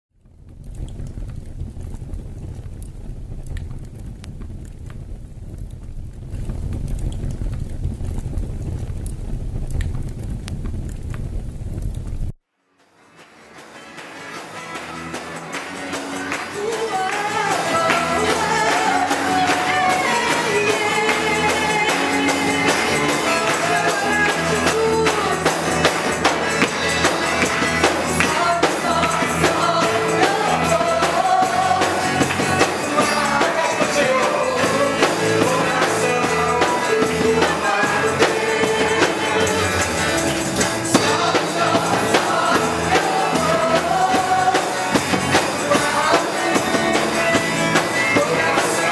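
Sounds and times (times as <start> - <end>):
bright regular percussion: 12.2 - 48.9
person singing worship song: 16.2 - 40.2, 40.8 - 48.9.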